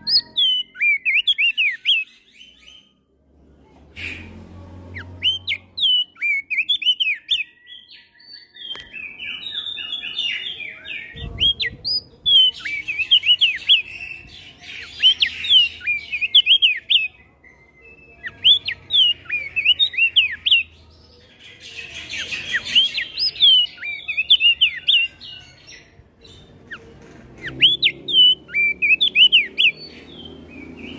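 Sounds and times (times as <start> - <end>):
bird singing whistled notes: 0.0 - 2.9, 4.0 - 20.8, 21.7 - 25.4, 26.2 - 30.9
other songbirds: 0.0 - 30.9.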